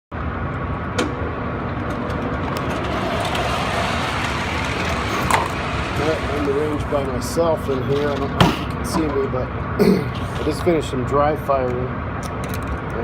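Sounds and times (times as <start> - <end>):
low rumbling background noise: 0.1 - 13.0.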